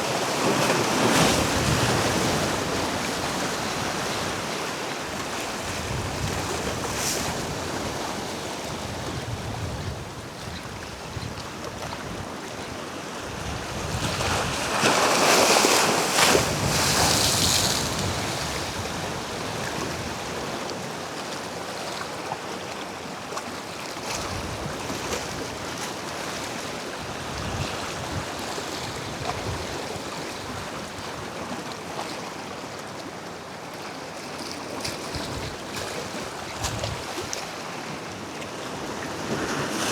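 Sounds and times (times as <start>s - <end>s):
ocean waves washing against rocks: 13.4s - 21.0s
wind buffeting microphone: 35.1s - 37.4s.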